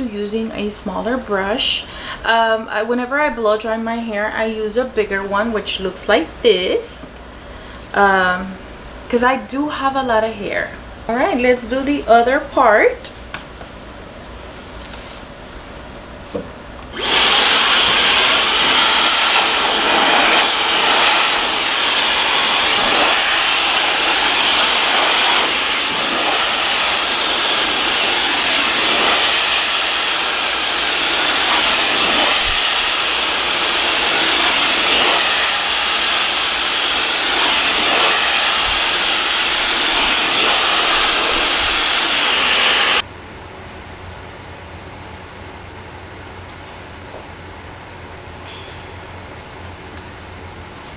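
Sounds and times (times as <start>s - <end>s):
hair dryer blowing: 16.9s - 43.0s.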